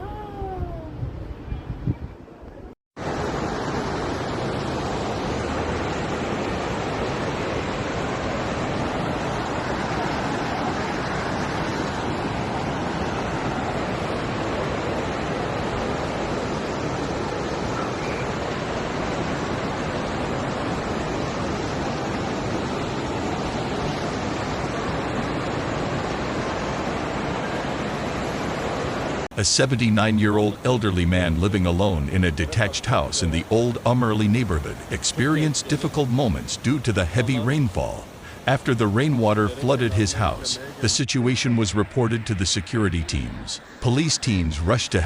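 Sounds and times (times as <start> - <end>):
floodwater rushing: 3.0 - 45.0.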